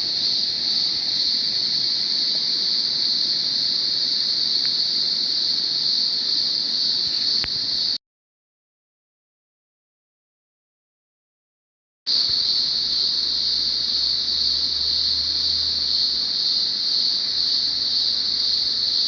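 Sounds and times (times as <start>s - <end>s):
distant falling water: 0.0s - 7.8s
high-pitched insect drone: 0.0s - 8.0s, 12.1s - 19.0s
single click: 7.0s - 7.6s.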